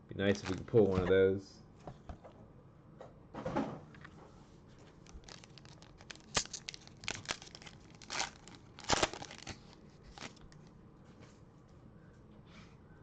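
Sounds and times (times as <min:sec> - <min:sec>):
card pack wrapper tearing: 0:00.3 - 0:00.7, 0:05.0 - 0:10.5.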